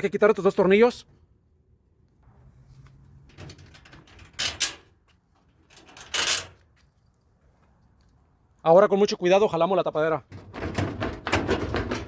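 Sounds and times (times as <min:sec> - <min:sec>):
metallic clicking and scraping of screws: 0:03.3 - 0:06.6.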